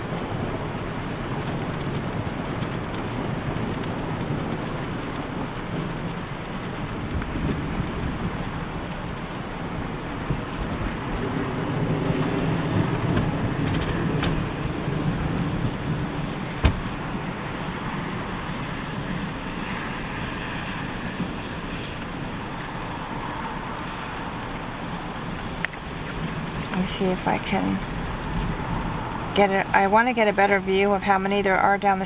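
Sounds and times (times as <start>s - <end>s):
rain falling on a vehicle: 0.0s - 32.0s
low rumble: 24.5s - 29.9s.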